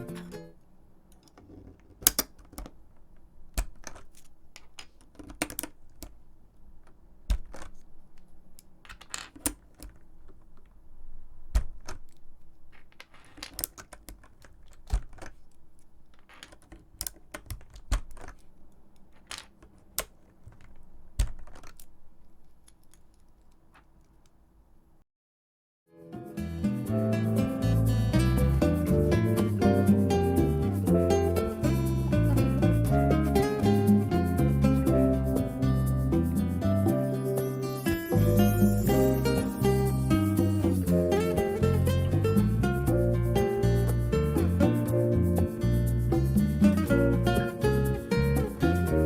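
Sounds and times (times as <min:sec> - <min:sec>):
keyboard parts clicking: 0:00.0 - 0:25.0, 0:37.8 - 0:44.8.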